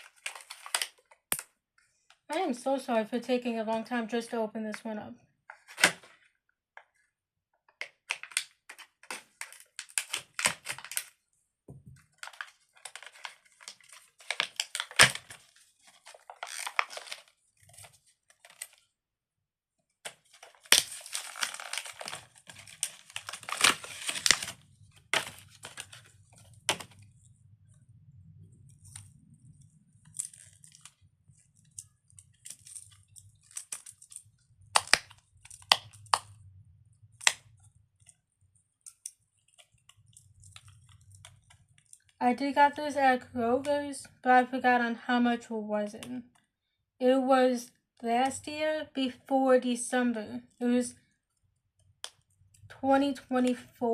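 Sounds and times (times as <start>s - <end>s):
plastic packaging torn open: 0.0s - 1.4s, 7.8s - 11.2s, 12.2s - 18.8s, 20.1s - 27.1s, 30.0s - 36.3s.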